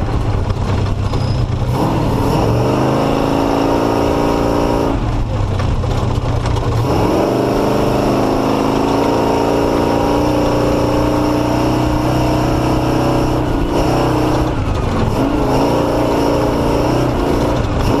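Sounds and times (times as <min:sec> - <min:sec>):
race vehicle engine running under load: 0:00.0 - 0:18.0.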